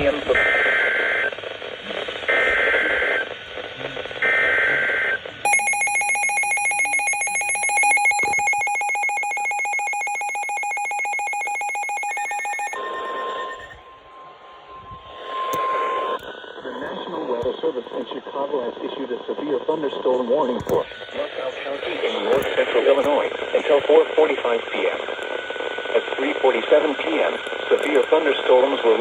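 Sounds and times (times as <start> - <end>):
steady single-pitched alarm tone: 4.2 - 14.5
rapid ringing warble alarm: 5.5 - 14.7.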